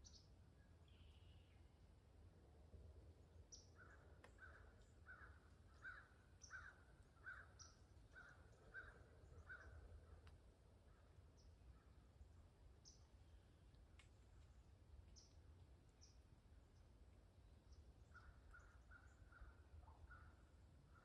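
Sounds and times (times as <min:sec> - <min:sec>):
bird calling: 0:03.5 - 0:10.2, 0:17.7 - 0:21.0.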